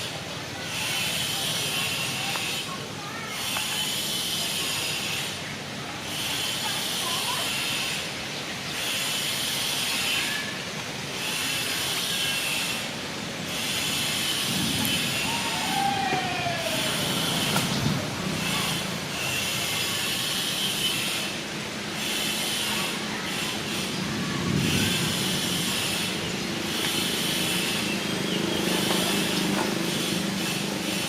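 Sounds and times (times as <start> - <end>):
wind hissing: 8.9 - 30.8
high-pitched drone: 12.6 - 30.6.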